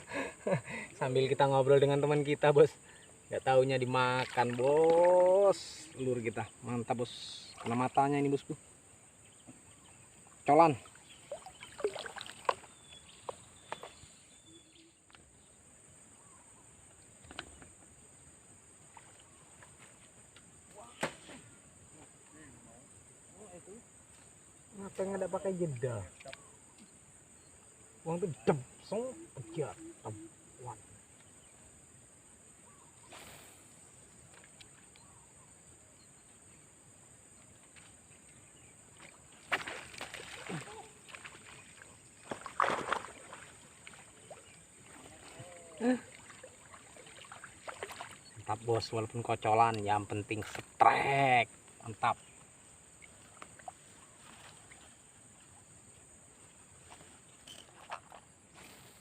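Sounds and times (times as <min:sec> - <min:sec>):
insect chorus drone: 0:00.0 - 0:59.0
loud water splash: 0:42.2 - 0:43.5.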